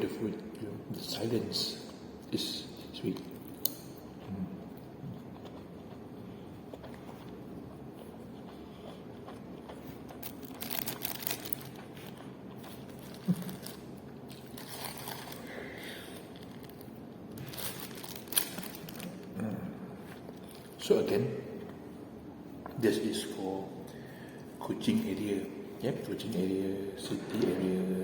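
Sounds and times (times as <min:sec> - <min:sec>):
low room hum: 0:00.0 - 0:28.0
crinkling and crunching: 0:09.3 - 0:19.4.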